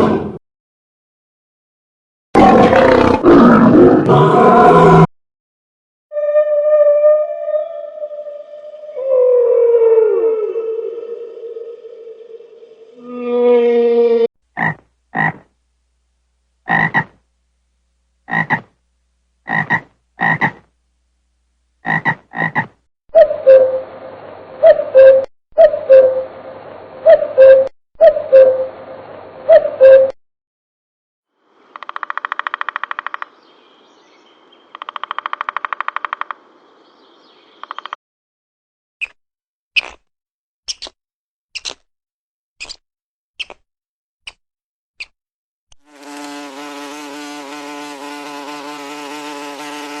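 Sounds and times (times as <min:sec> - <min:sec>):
frog croaking: 0:14.6 - 0:15.5, 0:16.7 - 0:17.2, 0:18.3 - 0:18.7, 0:19.4 - 0:20.6, 0:21.8 - 0:22.8, 0:31.6 - 0:33.4, 0:34.6 - 0:36.5, 0:37.6 - 0:38.0
faint birdsong: 0:31.6 - 0:38.0.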